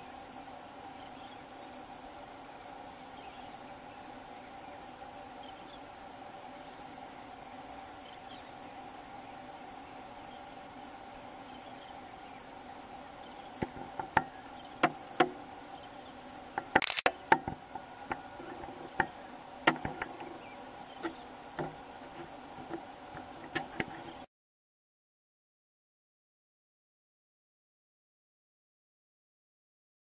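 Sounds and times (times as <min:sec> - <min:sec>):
insect chorus: 0:00.0 - 0:24.3
sharp clicks and knocks: 0:16.6 - 0:20.4, 0:21.0 - 0:24.2.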